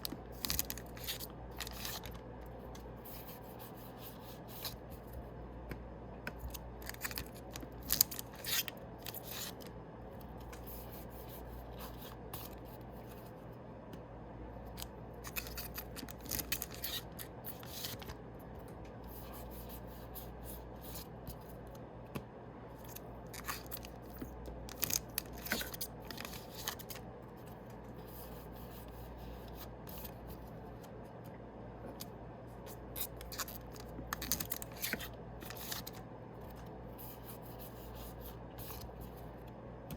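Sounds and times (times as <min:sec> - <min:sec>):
steady low hum: 0:00.0 - 0:39.9
crackling foil wrappers: 0:06.8 - 0:09.6, 0:15.2 - 0:18.1, 0:33.0 - 0:36.0
cards rubbing: 0:06.9 - 0:09.7, 0:15.2 - 0:18.2.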